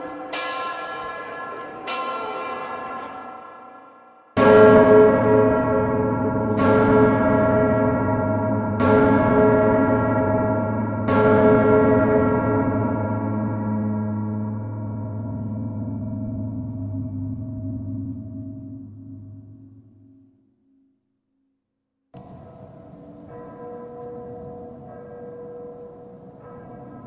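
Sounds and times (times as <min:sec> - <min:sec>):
deep metallic bell tone: 0:00.0 - 0:20.4.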